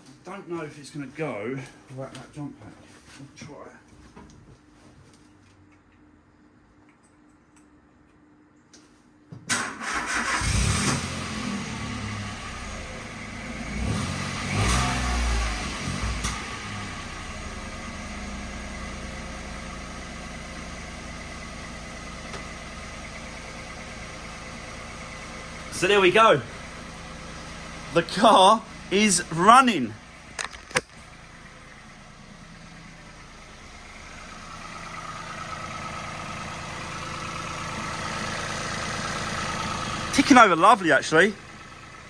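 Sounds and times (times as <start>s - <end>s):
car engine starting and revving: 9.5s - 42.0s
car engine idling: 9.6s - 42.0s.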